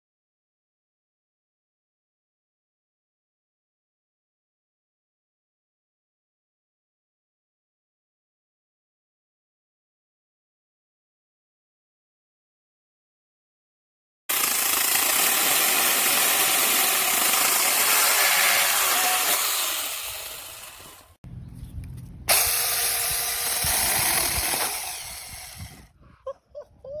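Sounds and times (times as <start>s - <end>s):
cordless chainsaw running: 14.3s - 21.2s, 22.3s - 25.9s.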